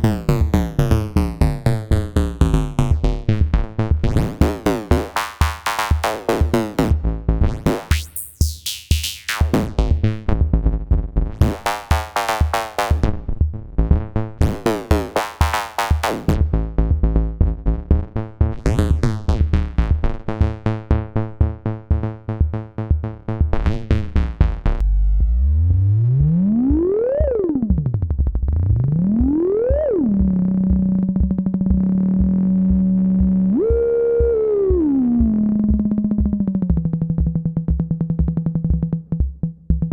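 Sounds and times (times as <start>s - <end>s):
pulsed synth sequence: 24.8s - 39.0s.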